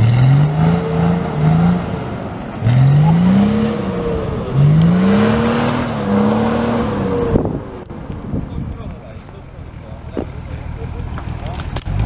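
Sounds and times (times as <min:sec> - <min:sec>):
engine revving hard: 0:00.0 - 0:07.9.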